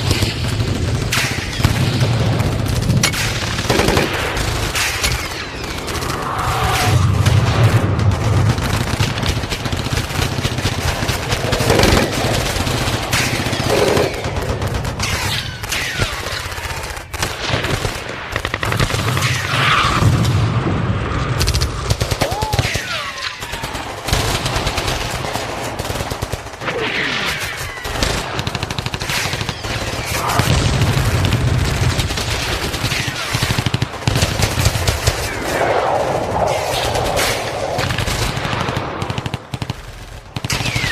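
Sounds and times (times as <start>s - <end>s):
machine-gun and rifle fire: 0.0s - 20.4s, 21.2s - 40.9s
explosion booms: 6.5s - 8.6s.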